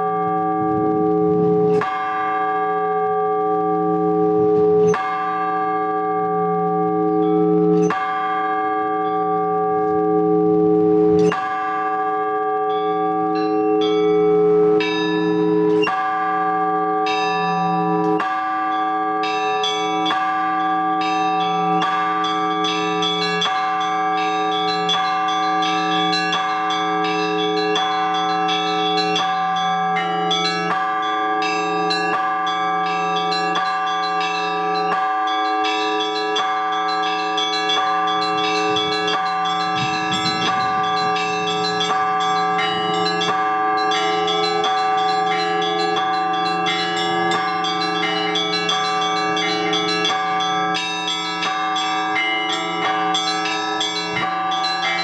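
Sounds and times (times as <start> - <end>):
small bells struck quickly: 21.9 - 55.0
deep bell humming: 22.6 - 55.0.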